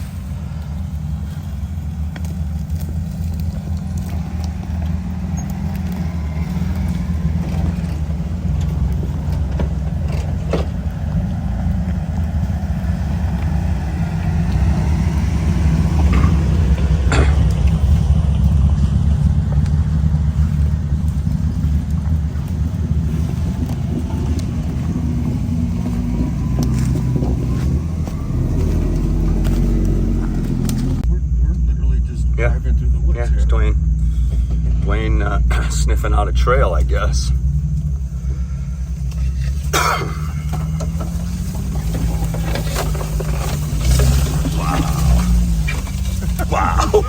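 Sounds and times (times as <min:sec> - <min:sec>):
jeep engine running at low revs: 0:00.0 - 0:47.0.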